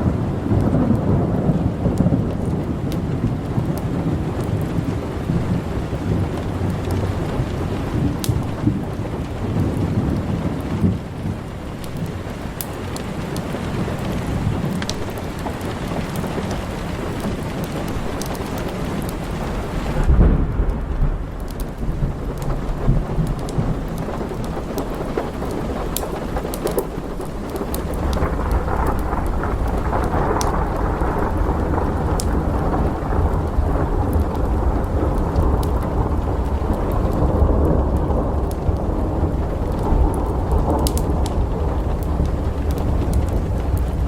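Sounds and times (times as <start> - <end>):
steady rain: 0.0 - 44.0
thunder clap and rolling rumble: 0.0 - 44.0
sharp crackles: 1.6 - 44.0.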